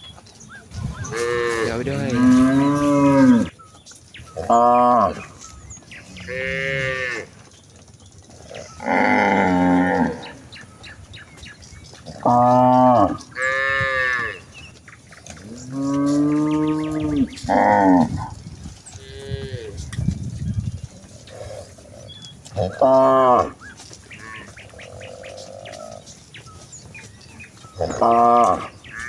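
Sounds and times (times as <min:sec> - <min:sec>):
cattle mooing: 0:01.0 - 0:03.6, 0:04.4 - 0:05.4, 0:06.0 - 0:07.4, 0:08.4 - 0:10.6, 0:12.0 - 0:14.6, 0:15.4 - 0:19.9, 0:21.2 - 0:26.0, 0:27.7 - 0:29.0.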